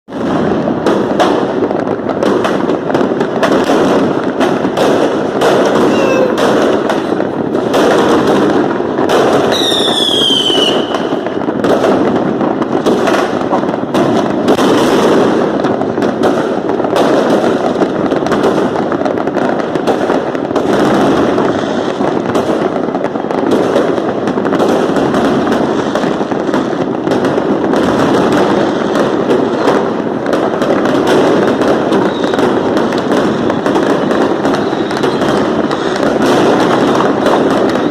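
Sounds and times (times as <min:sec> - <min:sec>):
fireworks bangs and crackles: 0:00.0 - 0:37.9
falling firework whistle: 0:05.0 - 0:07.1, 0:09.2 - 0:11.4, 0:31.5 - 0:36.0.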